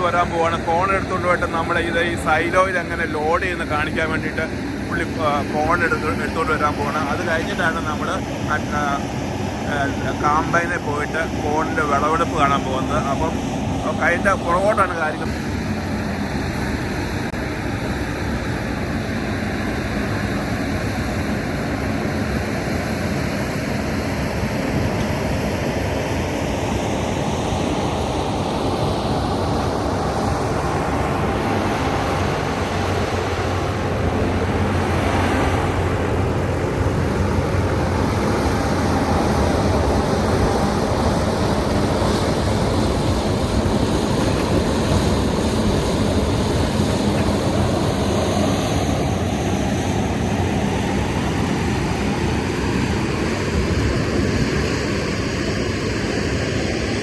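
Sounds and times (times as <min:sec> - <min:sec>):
corn dryer fan roaring: 0:25.8 - 0:54.3.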